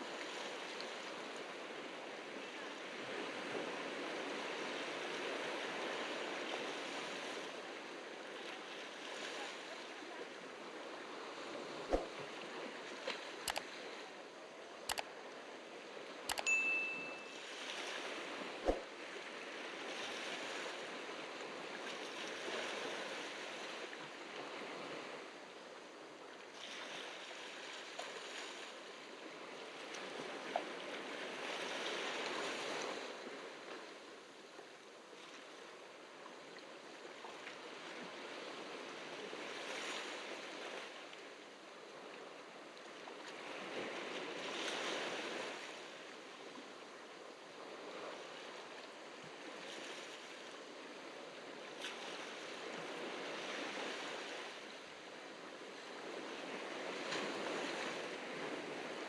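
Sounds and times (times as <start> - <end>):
short sharp click: 16.3 - 17.2, 18.6 - 18.8.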